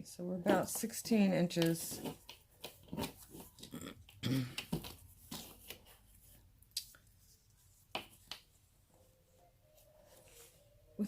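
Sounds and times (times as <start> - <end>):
necklace and card rustling: 0.5 - 3.8, 4.6 - 8.5.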